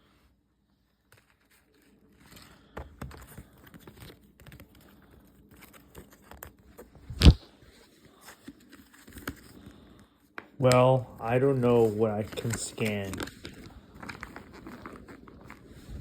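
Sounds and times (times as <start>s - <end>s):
packaging rustling: 1.1s - 10.0s, 10.6s - 16.0s.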